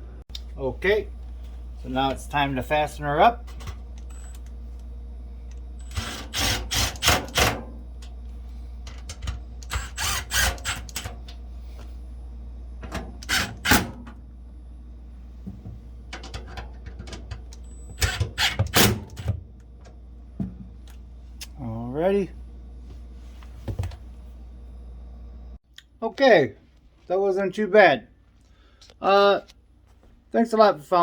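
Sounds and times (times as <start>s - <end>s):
steady low hum: 0.0s - 31.0s
metal panel and screws clattering: 16.1s - 17.4s.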